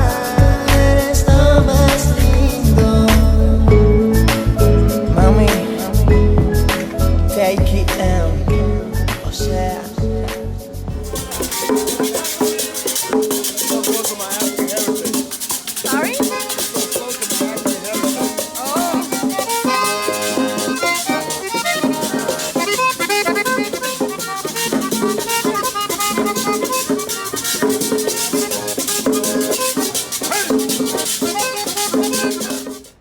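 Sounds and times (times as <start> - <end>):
upbeat latin music: 0.0 - 33.0
shaker rattling: 10.9 - 33.0.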